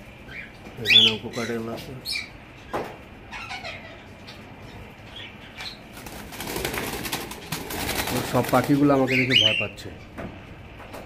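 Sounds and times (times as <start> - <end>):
birds giving falling chirps: 0.1 - 10.0
wings fluttering: 5.8 - 9.4.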